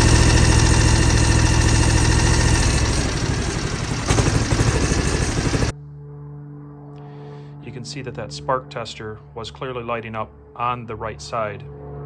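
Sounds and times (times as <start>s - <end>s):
misfiring engine pulsing: 0.0s - 5.7s.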